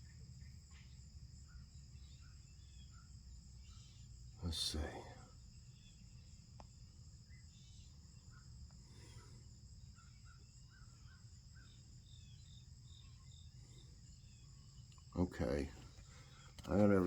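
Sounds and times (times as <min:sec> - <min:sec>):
high-pitched insect trill: 0:00.0 - 0:15.6.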